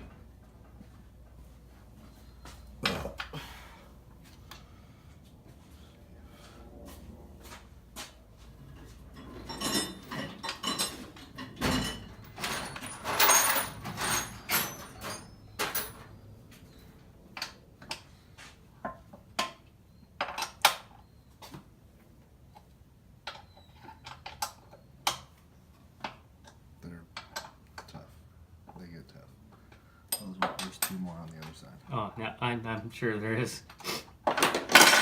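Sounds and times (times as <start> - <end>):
metal hand tools clattering: 9.2 - 16.1, 34.3 - 35.0.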